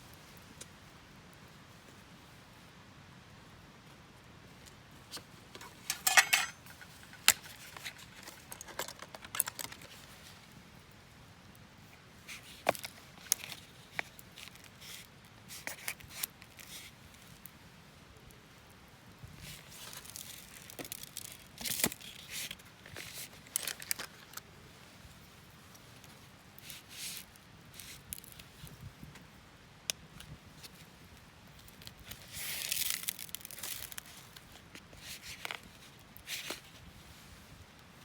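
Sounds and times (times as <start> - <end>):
crinkling rustling bursts: 4.5 - 10.6, 19.3 - 29.2, 30.4 - 38.0.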